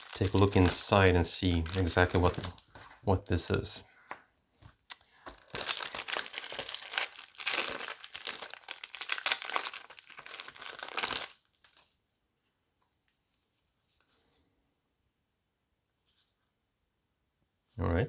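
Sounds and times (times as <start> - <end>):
wrapper tearing and crinkling: 0.0 - 2.7, 5.3 - 11.9.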